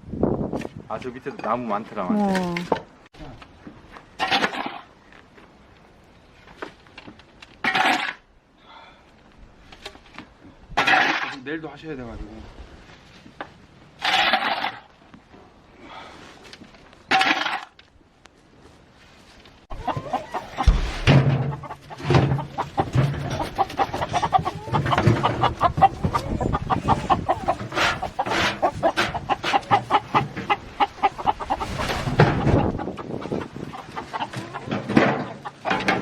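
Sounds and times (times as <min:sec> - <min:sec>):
chickens clucking: 0:19.7 - 0:36.0.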